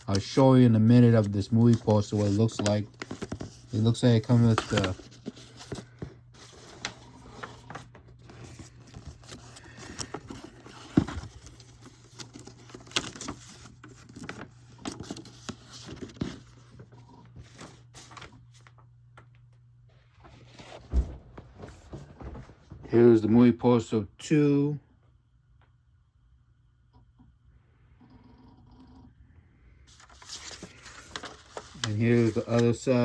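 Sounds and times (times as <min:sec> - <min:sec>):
paper rustling and crinkling: 0:00.0 - 0:18.9, 0:20.0 - 0:22.6, 0:29.9 - 0:33.0.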